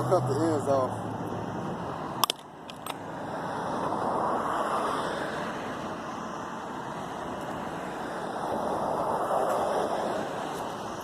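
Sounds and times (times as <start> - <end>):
road traffic rushing: 0.0 - 11.0.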